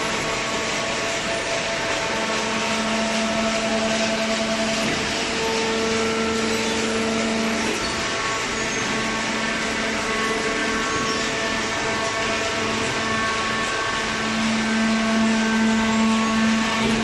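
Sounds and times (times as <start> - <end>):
cardboard baler running: 0.0 - 17.0
droning hum: 0.0 - 17.0.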